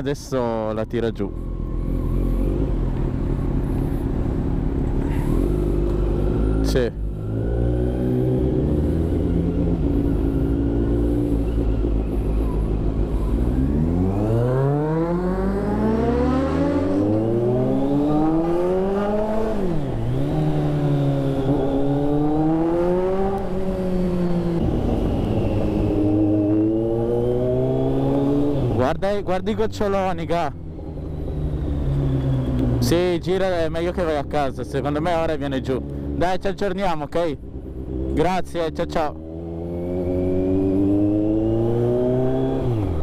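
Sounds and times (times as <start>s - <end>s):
motorcycle engine revving: 1.4s - 29.0s, 37.3s - 43.0s.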